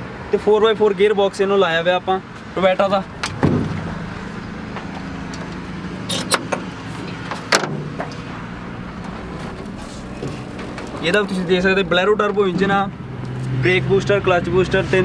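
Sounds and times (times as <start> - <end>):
low hum: 3.0 - 7.1
metal clunks of car bonnet: 3.2 - 4.0, 6.1 - 8.3.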